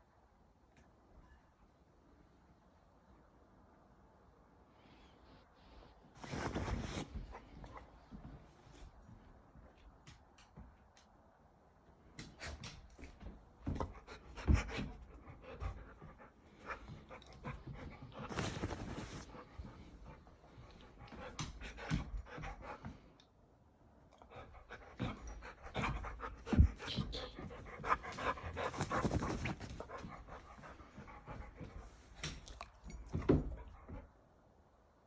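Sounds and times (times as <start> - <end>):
animal panting: 13.7 - 23.0, 24.2 - 34.0
scuffing and rustling: 17.6 - 20.0, 25.8 - 32.4.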